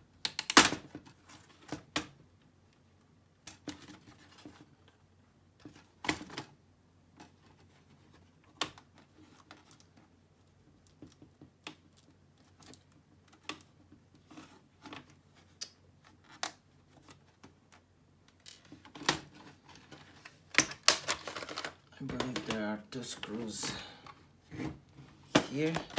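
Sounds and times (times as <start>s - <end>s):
plastic parts and screws clicking: 19.8s - 22.7s.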